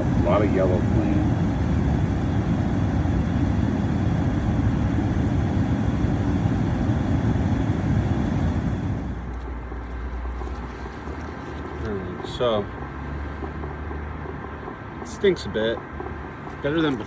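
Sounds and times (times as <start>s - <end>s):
low hum: 0.0s - 11.6s
gas furnace rushing flame: 0.0s - 12.8s.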